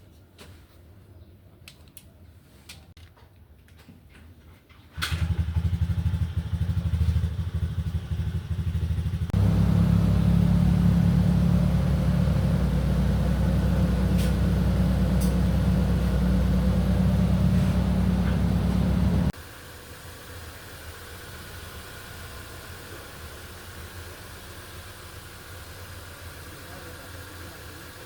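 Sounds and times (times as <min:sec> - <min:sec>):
car engine running: 0:07.6 - 0:28.0.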